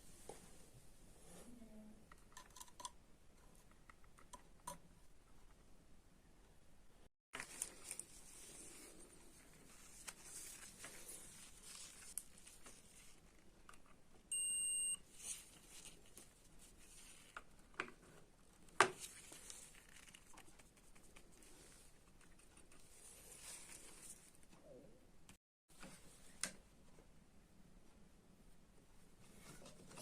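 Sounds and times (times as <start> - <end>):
electronic beep: 14.3 - 15.0.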